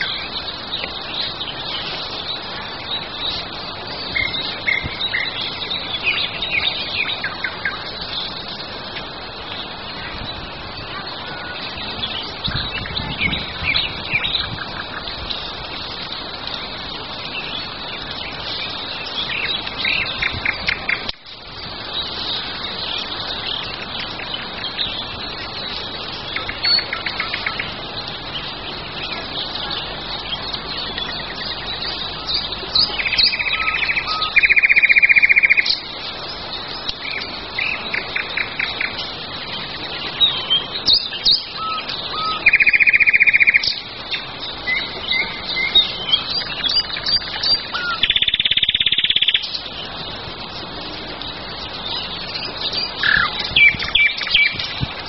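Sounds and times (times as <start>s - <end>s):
songbirds chirping: 0.0s - 55.0s
steady background hiss: 0.0s - 55.0s
loud rapid bird trill: 21.9s - 50.0s, 51.6s - 54.8s.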